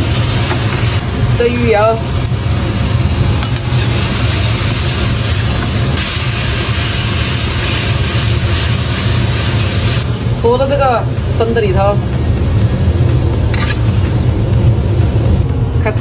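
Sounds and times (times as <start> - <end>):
garlic sizzling in hot oil: 0.0 - 15.4
low steady rumble: 0.0 - 16.0.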